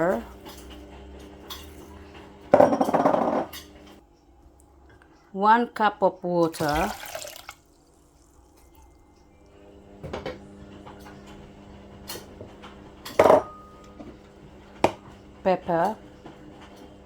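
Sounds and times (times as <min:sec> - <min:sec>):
utensils clinking against pot: 0:00.0 - 0:04.0.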